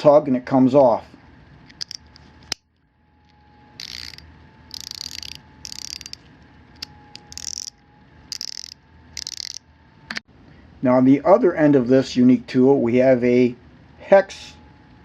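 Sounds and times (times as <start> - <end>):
ratchet pawl clicking: 3.8 - 6.2, 6.8 - 9.6.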